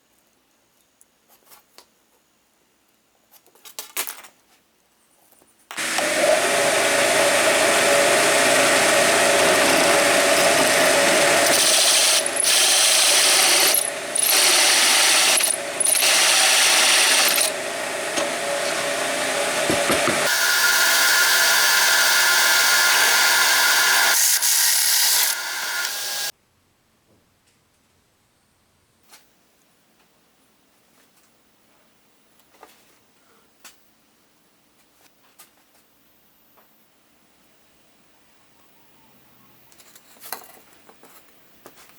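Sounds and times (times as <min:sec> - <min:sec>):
electric power tool motor whine: 0:05.7 - 0:26.3.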